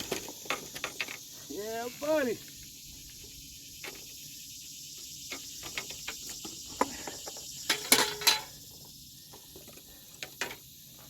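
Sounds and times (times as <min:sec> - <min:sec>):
steady high hiss: 0:00.0 - 0:11.0.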